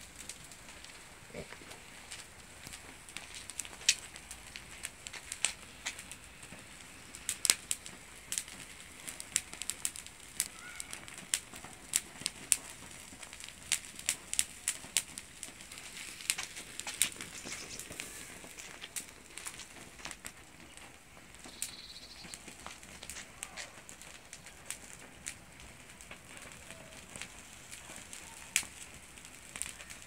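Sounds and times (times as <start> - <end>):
branch crackling and popping: 0.0 - 30.0
faint flame hiss: 0.0 - 30.0.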